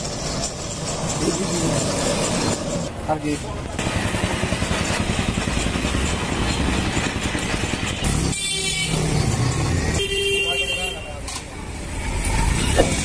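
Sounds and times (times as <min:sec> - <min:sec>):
two-stroke motorcycle engine running: 0:03.7 - 0:10.0.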